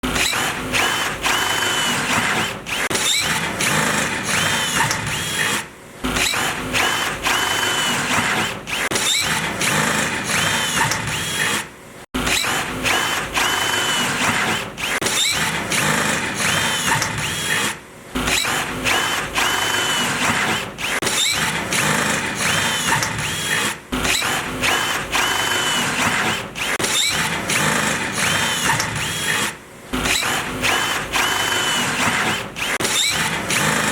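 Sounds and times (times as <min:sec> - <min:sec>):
power drill boring into steel: 0:00.1 - 0:05.6, 0:18.3 - 0:33.9.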